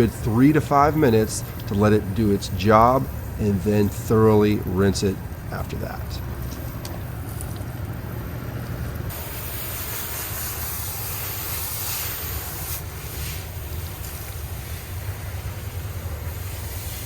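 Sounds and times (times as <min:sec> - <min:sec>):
steady low hum: 0:00.0 - 0:17.0
liquid spray hissing: 0:09.1 - 0:17.0.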